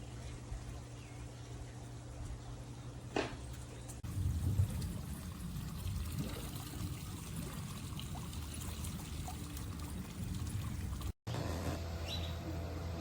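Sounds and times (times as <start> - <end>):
water pouring and trickling: 4.0 - 11.2.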